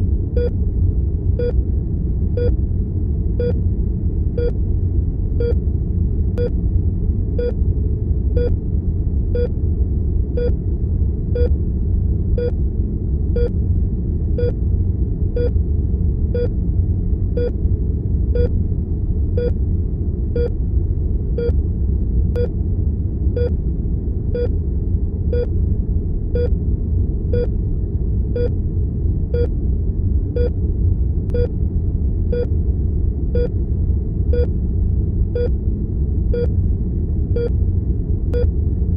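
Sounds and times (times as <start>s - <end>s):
low rumble of room tone: 0.0s - 38.9s
heart monitor beeping: 31.3s - 31.5s, 34.3s - 34.5s, 36.3s - 36.5s, 38.3s - 38.5s.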